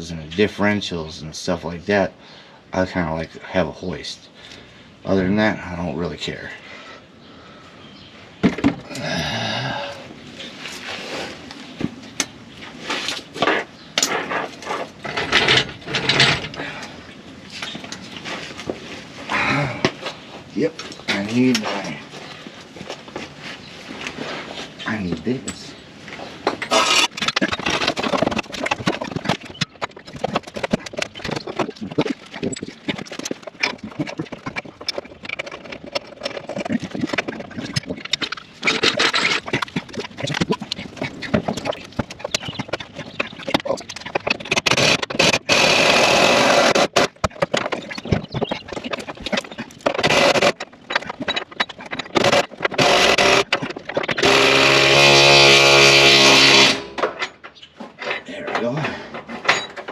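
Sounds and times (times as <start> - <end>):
hand tools clicking and clattering: 13.0 - 23.4, 24.8 - 59.9
small power tool buzzing: 45.4 - 47.0, 54.2 - 57.0.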